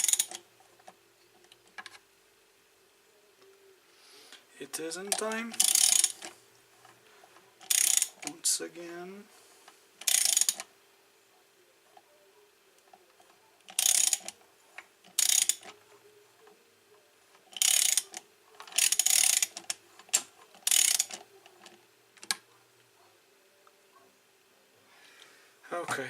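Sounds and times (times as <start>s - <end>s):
ratchet wrench clicking: 0.0s - 0.4s, 5.1s - 6.3s, 7.6s - 8.3s, 10.0s - 10.7s, 13.7s - 14.4s, 15.1s - 15.7s, 17.5s - 21.2s.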